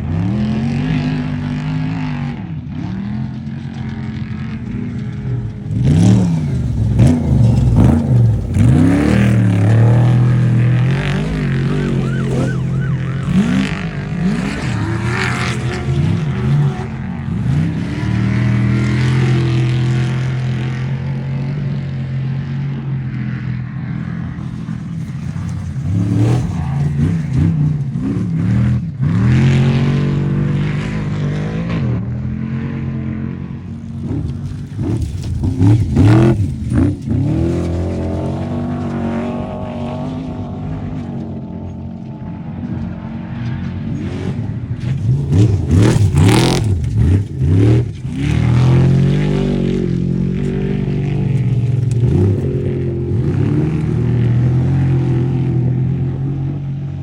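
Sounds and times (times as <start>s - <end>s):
race vehicle engines revving: 0.0s - 57.0s.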